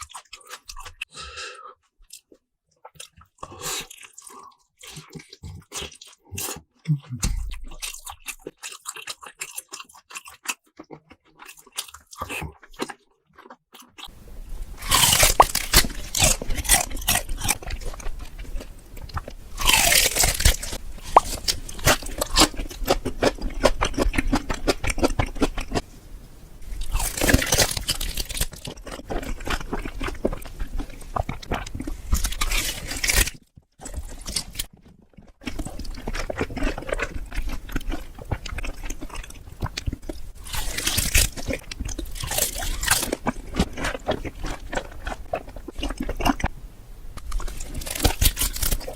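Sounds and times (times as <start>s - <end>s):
chewing crunchy food: 0.0s - 25.9s, 26.6s - 48.9s.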